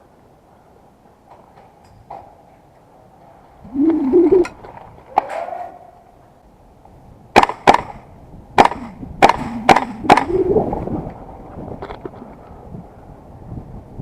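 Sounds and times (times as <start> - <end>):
airsoft rifle shots: 7.4 - 10.4.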